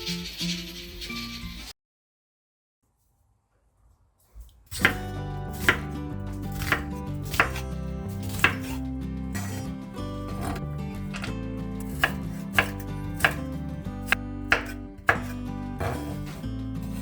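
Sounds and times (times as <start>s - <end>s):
knife chopping on cutting board: 4.7s - 8.8s, 9.4s - 9.7s, 10.3s - 17.0s
background music: 4.8s - 17.0s.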